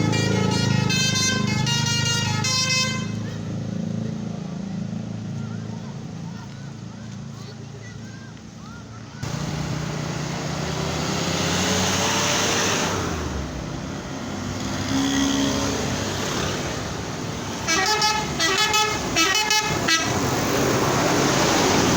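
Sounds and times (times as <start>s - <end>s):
bus multi-tone horn melody: 0.0s - 3.4s, 16.3s - 21.0s
heavy traffic passing: 0.0s - 21.9s.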